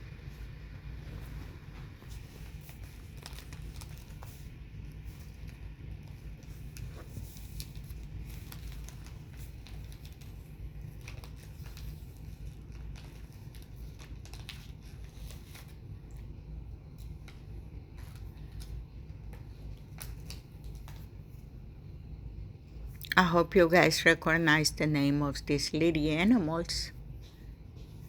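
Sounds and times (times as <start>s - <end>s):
steady low hum: 0.0s - 14.3s, 14.9s - 28.0s
crinkly rustling: 0.0s - 21.6s.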